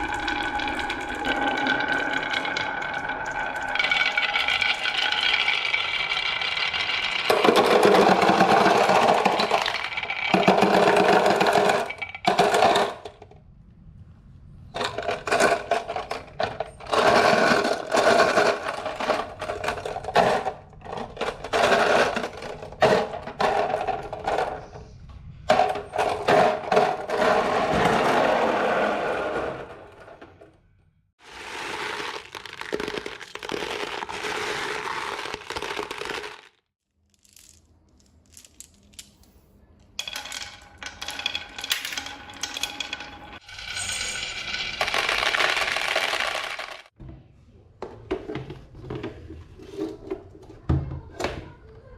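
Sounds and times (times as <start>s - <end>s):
marbles rolling on wooden tracks: 0.0s - 13.3s, 14.8s - 24.8s, 31.3s - 36.6s, 40.0s - 46.9s
marbles clacking against wood: 40.0s - 46.9s.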